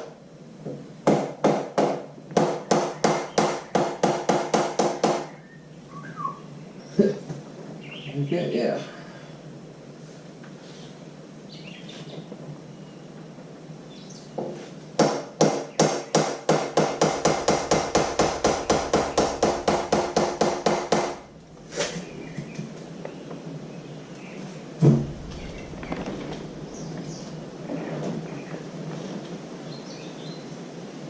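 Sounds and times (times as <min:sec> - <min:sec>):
hammer striking metal: 0:15.8 - 0:22.0.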